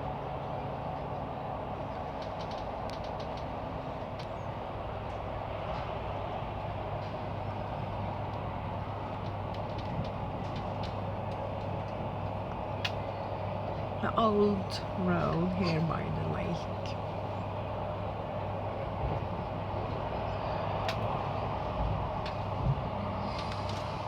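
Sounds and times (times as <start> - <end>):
train rumble and hum: 0.0 - 24.0
light ticks: 9.1 - 13.0.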